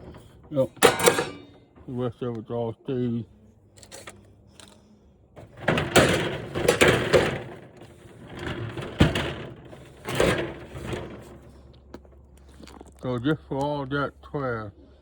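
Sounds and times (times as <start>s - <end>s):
plastic parts rustling: 0.0s - 1.6s, 5.4s - 11.4s.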